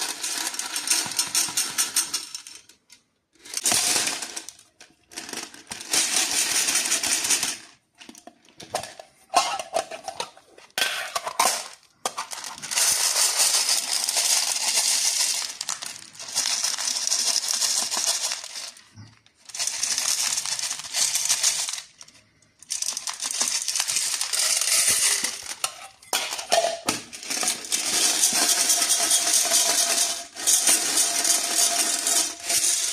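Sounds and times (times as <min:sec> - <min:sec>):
plastic wrappers crinkling: 0:11.2 - 0:25.7.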